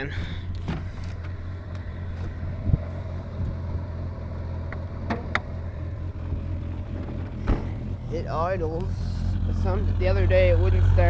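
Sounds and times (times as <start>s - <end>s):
car engine idling rough: 0.0s - 11.0s
thump: 5.1s - 5.4s, 7.0s - 7.9s.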